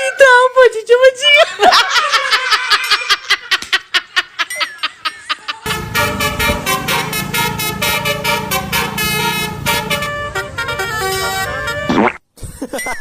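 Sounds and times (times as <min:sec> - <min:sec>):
low engine hum: 0:05.7 - 0:10.9
musical air horn tune: 0:05.7 - 0:12.2.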